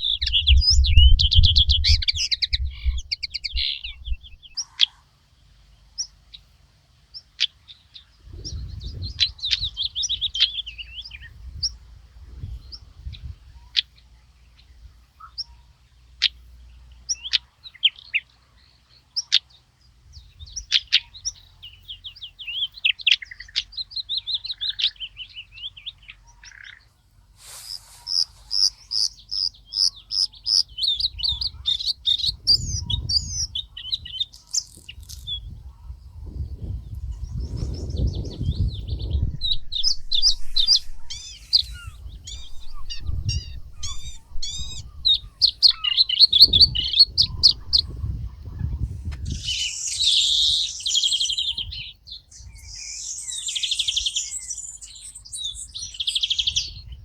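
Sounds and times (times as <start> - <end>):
songbirds chirping and singing: 0.0 - 6.5, 7.1 - 57.0
low rumble: 36.3 - 45.8.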